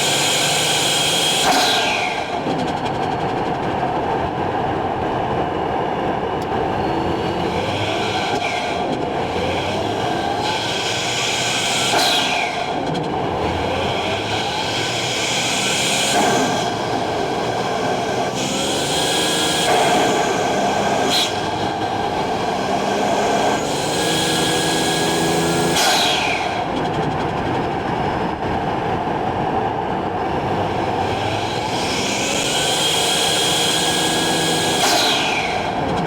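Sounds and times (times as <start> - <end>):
car engine revving: 6.4 - 27.6, 30.3 - 36.0.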